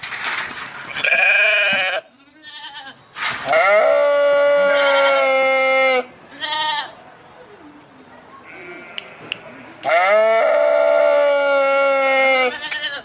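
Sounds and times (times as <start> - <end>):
sheep bleating: 0.9 - 6.9, 9.8 - 13.0.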